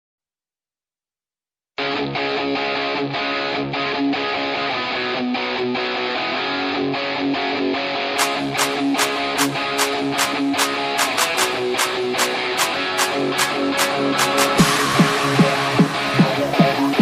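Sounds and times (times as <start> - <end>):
strummed guitar music: 1.8 - 17.0
sharp drum hits: 8.2 - 16.4.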